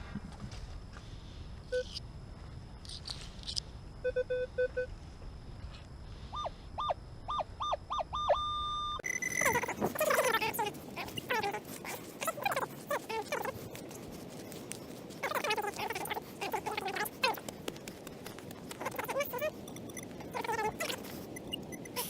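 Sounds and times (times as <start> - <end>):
metal detector beeps and chirps: 1.7 - 2.0, 6.3 - 10.2, 21.0 - 22.0
gliding chirping sounds: 18.8 - 22.0.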